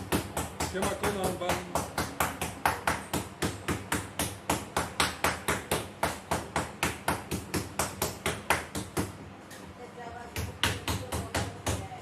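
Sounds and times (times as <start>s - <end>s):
rapid sharp knocking strikes: 0.0s - 9.2s.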